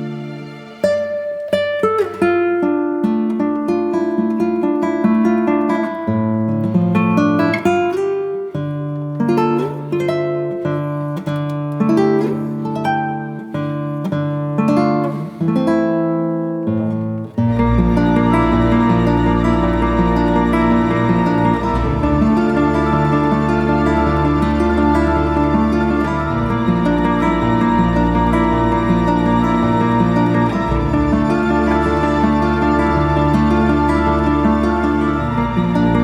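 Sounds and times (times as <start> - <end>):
acoustic guitar melody: 0.0 - 36.0
sustained bass notes: 17.6 - 36.0.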